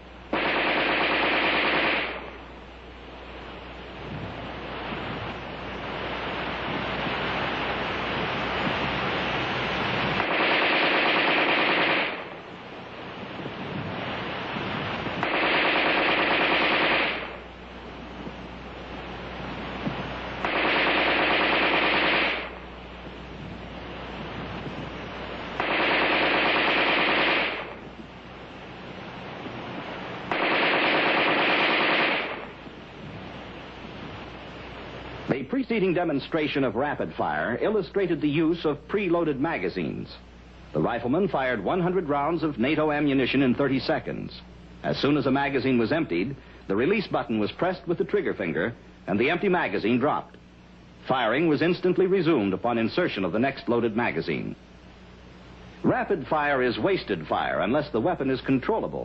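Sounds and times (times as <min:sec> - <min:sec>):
automatic rifle bursts: 0:00.3 - 0:02.3, 0:10.2 - 0:12.3, 0:15.2 - 0:17.4, 0:20.4 - 0:22.6, 0:25.6 - 0:27.8, 0:30.3 - 0:32.6.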